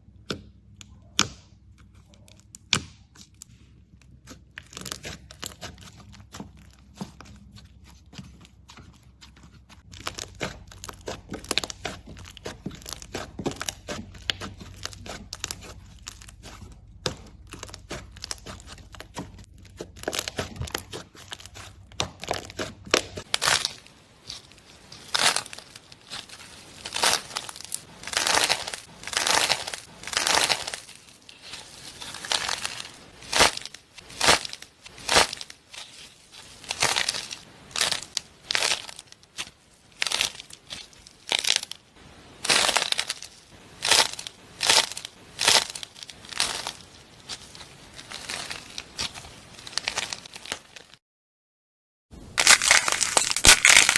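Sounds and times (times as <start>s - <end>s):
slime squishing: 0.0s - 41.7s
slime crackling and popping: 0.3s - 51.0s, 52.3s - 53.9s.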